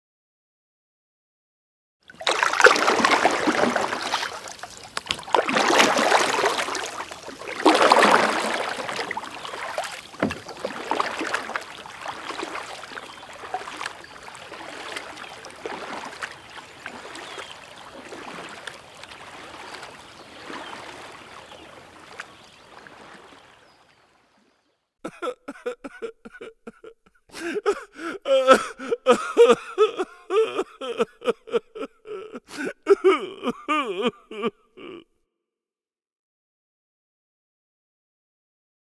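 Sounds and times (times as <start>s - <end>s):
water rushing around kayak: 2.0s - 24.6s.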